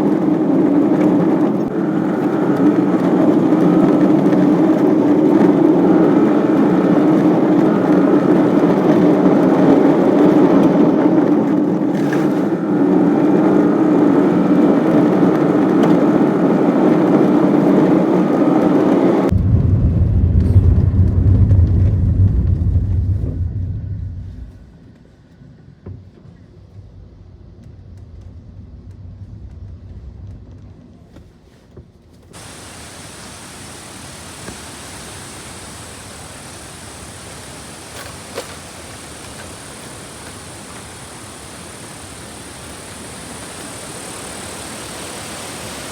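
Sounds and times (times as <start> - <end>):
deep low rumble: 19.3 - 25.0, 26.7 - 31.2
waterfall rushing: 32.4 - 45.9.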